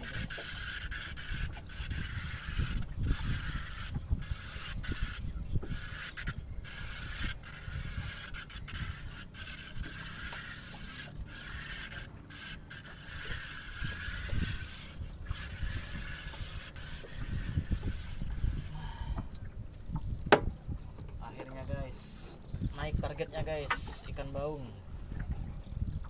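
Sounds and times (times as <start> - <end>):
fishing reel whirring: 0.0 - 19.2
person talking: 21.2 - 24.8.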